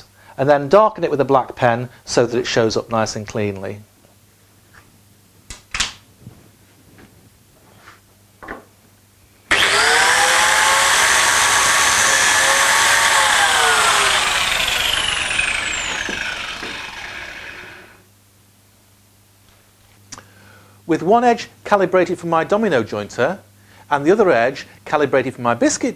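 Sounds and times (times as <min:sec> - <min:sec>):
electric power tool whine: 0:09.5 - 0:18.0.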